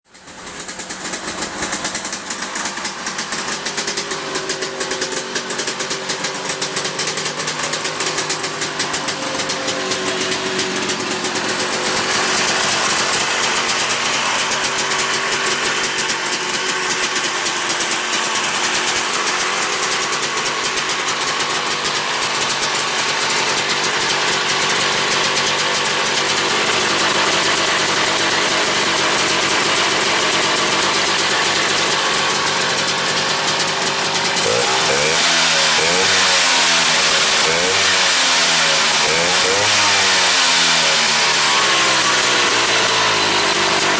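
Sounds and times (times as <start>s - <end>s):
two-stroke engine running: 0.1s - 43.9s.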